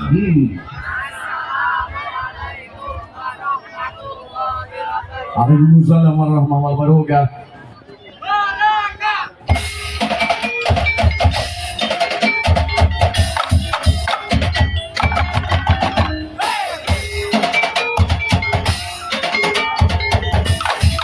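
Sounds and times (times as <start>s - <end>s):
melody line: 9.5s - 21.0s
percussion ensemble drumming: 9.5s - 21.0s.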